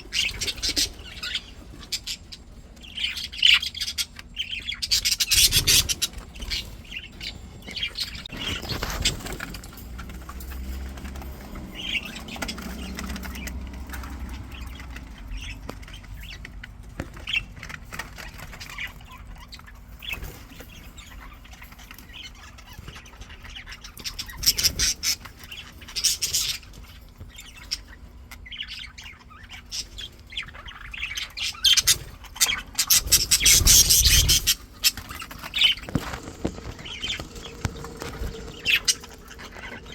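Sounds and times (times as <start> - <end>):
budgies chirping and squawking: 0.0 - 39.9
wings flapping: 8.2 - 14.5, 32.7 - 39.9.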